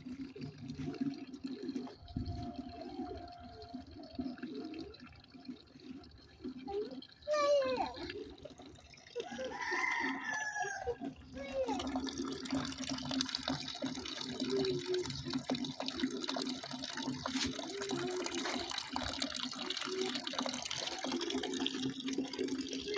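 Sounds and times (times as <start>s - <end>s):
rooster crowing: 9.2s - 11.0s.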